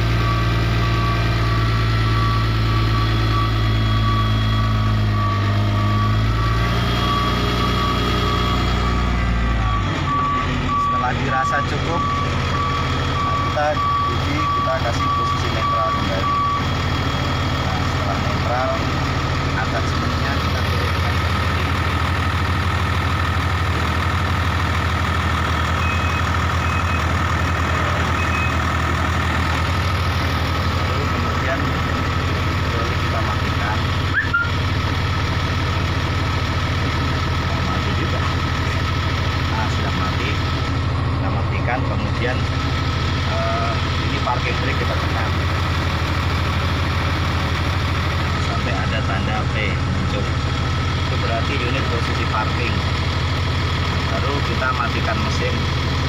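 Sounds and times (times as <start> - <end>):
reversing alarm beeping: 0.0 - 34.8
diesel engine running: 0.0 - 56.0.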